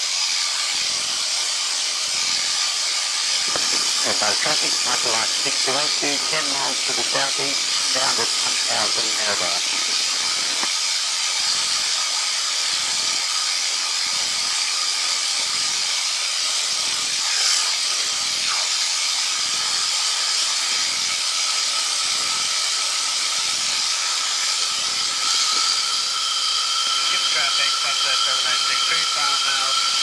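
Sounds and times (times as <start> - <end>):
microlight engine noise: 2.4 - 12.0, 23.0 - 30.0
thin steady tones: 3.2 - 10.7, 23.7 - 30.0.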